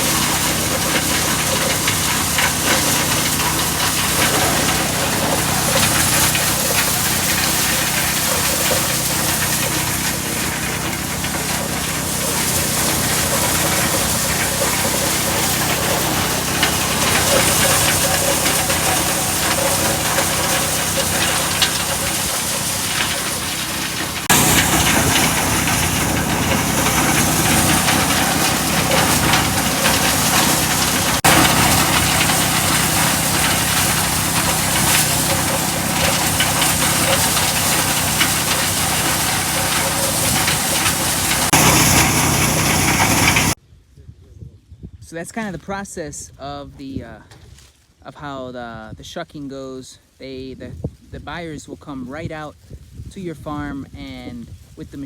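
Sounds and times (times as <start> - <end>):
corn sheller motor droning: 0.0 - 43.6
rushing hiss of shelling: 0.0 - 43.6.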